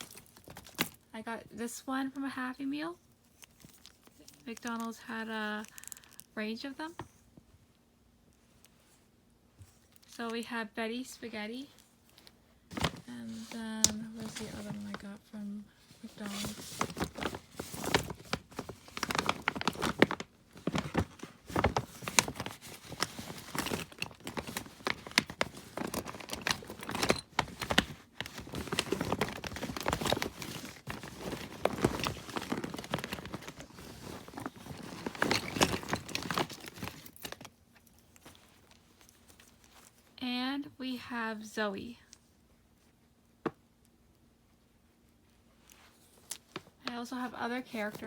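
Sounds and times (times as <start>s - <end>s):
plastic bag crinkling: 3.3s - 6.4s, 16.0s - 40.1s.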